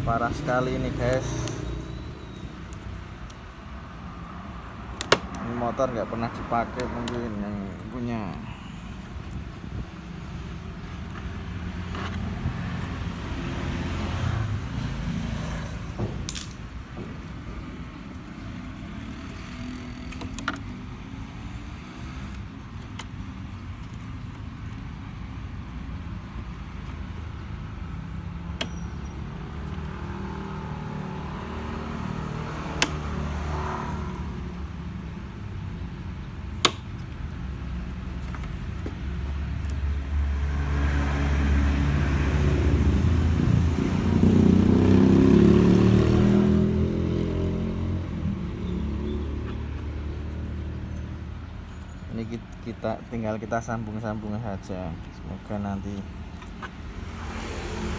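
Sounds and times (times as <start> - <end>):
vehicle engine rumble: 0.0 - 57.9
sharp clicks: 32.7 - 33.3, 36.6 - 38.8.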